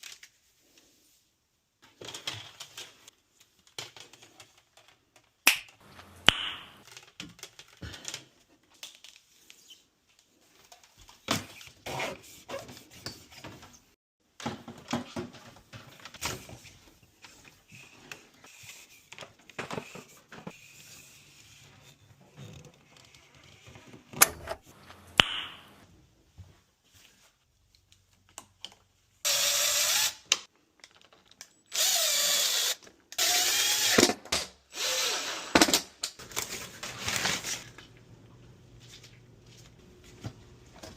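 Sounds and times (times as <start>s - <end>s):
plastic parts clicking and rattling: 1.8s - 6.1s, 6.8s - 11.8s, 30.3s - 31.9s.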